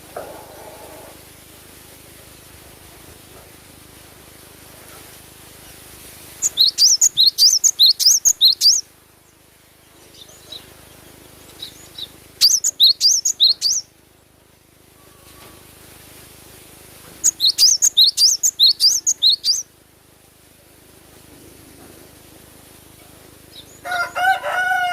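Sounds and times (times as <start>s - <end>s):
bird chirping: 6.4s - 13.9s, 17.2s - 19.7s.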